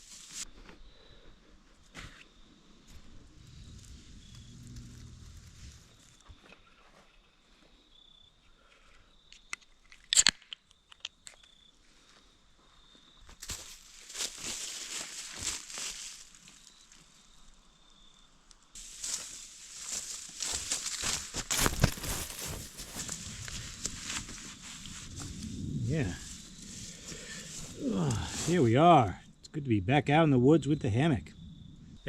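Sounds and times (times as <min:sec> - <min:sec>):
footsteps crunching through dry leaves: 0:13.4 - 0:17.0, 0:18.8 - 0:28.6.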